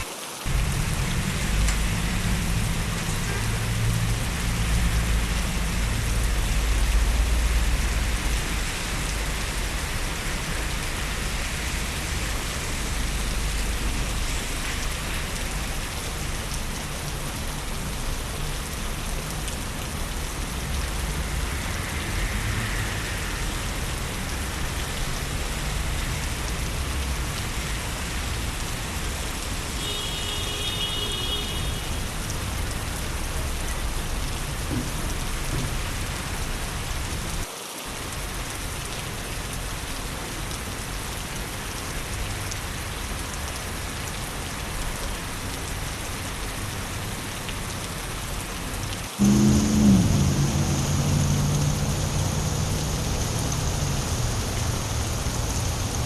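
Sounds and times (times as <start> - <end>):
rain on wet street: 0.0 - 56.0
low rumble: 0.5 - 8.6, 49.2 - 56.0.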